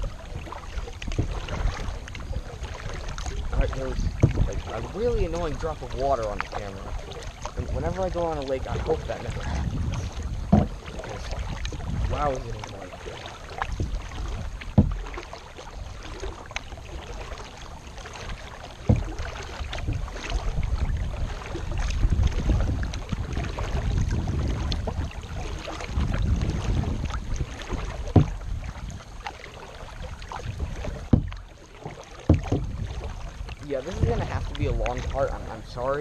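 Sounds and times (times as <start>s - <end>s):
wind buffeting microphone: 0.0s - 15.2s, 15.8s - 29.3s, 32.3s - 36.0s
kayak paddling in water: 0.0s - 36.0s
sharp knocks: 10.5s - 10.8s, 14.7s - 15.1s, 28.0s - 28.4s, 31.1s - 31.4s, 32.3s - 32.8s.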